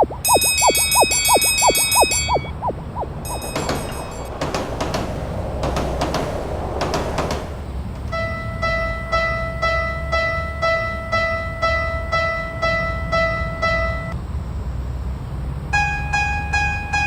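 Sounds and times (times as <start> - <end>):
level crossing alarm dinging: 0.0 - 5.8
low rumble: 0.0 - 8.9.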